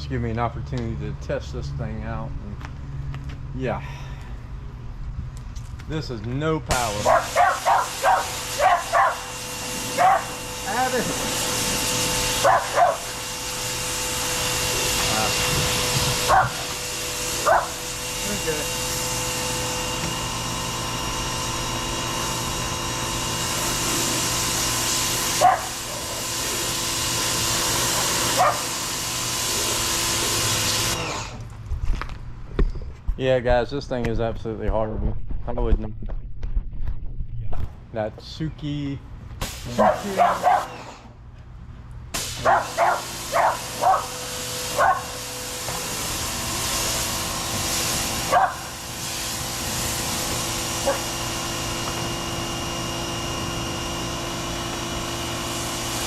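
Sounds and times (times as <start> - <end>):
pressure washer running: 6.6 - 31.6, 39.3 - 41.3, 42.0 - 56.0
pump motor hum: 6.7 - 32.1, 39.4 - 41.3, 42.1 - 56.0
dog barking: 7.0 - 9.3, 9.9 - 10.4, 12.4 - 13.1, 16.3 - 16.7, 17.4 - 17.8, 25.4 - 25.8, 28.3 - 28.7, 39.7 - 40.8, 42.4 - 44.2, 44.8 - 45.2, 48.3 - 48.7, 50.8 - 51.1.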